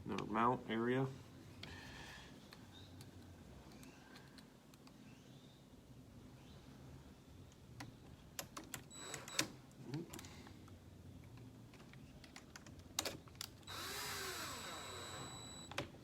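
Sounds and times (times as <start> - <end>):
small electric motor whirring: 13.7 - 15.6.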